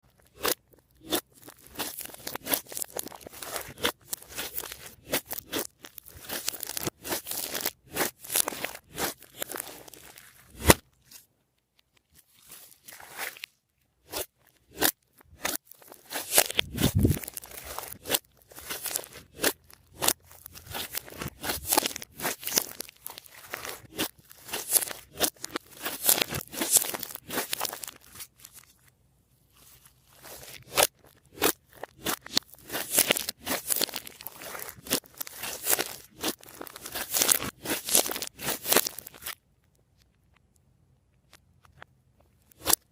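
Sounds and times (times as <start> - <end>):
sticky crackles and pops: 0.1 - 28.9, 29.6 - 42.9
slime squished by hand: 12.2 - 28.7, 29.6 - 39.4.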